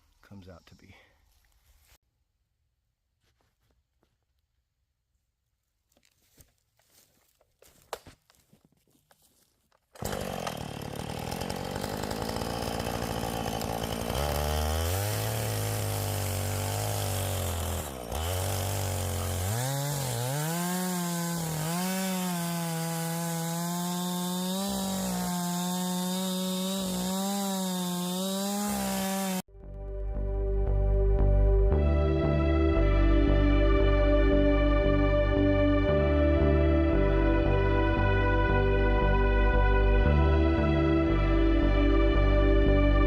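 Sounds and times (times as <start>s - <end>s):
chainsaw cutting log: 9.9s - 29.5s.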